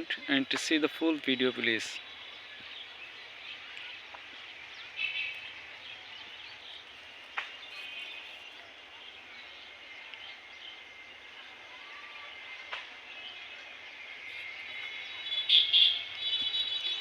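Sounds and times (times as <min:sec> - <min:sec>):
outdoor hiss: 0:00.0 - 0:16.9
birds chirping: 0:00.0 - 0:17.0
bird trill: 0:14.3 - 0:17.0.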